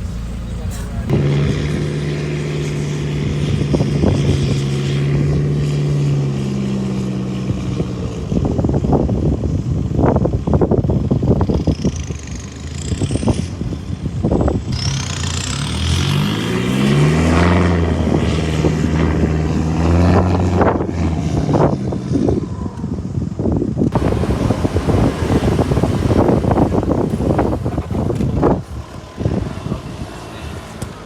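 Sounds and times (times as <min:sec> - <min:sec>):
engine revving hard: 0:00.0 - 0:07.8, 0:14.7 - 0:22.4, 0:23.9 - 0:31.0
rough rush of noise with knocks: 0:23.9 - 0:29.5.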